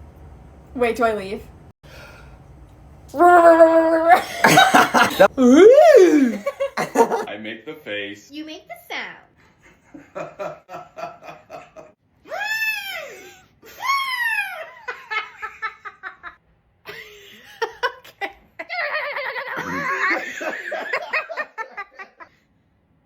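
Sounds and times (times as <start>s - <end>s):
person squealing: 3.1s - 7.3s, 19.6s - 19.9s
laughter: 4.2s - 5.3s, 6.2s - 7.3s, 9.4s - 12.0s, 13.0s - 22.3s.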